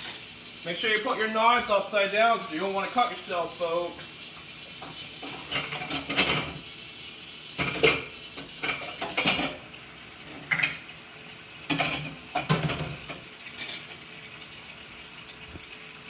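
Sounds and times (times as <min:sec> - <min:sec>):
cutlery and dishes clinking: 0:00.0 - 0:00.3, 0:05.2 - 0:06.6, 0:07.6 - 0:09.6, 0:11.7 - 0:14.0.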